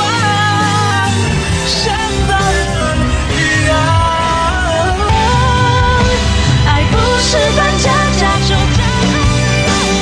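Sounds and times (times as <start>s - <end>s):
pop song with band: 0.0s - 10.0s.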